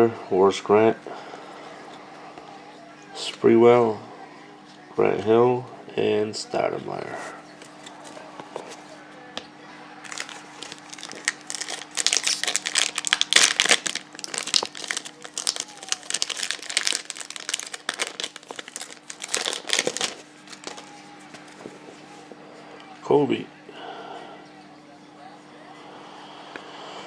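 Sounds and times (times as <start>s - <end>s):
foil wrapper tearing and crinkling: 10.1s - 21.7s.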